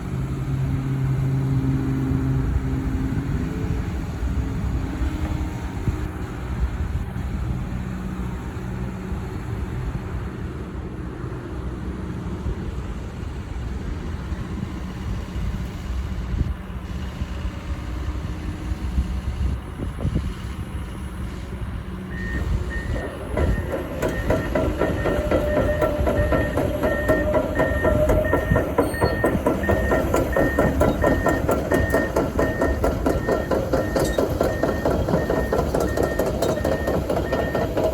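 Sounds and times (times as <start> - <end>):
diesel engine running: 0.0 - 37.9
travel alarm beeping: 22.2 - 37.8
steel tracks clattering: 22.2 - 37.9.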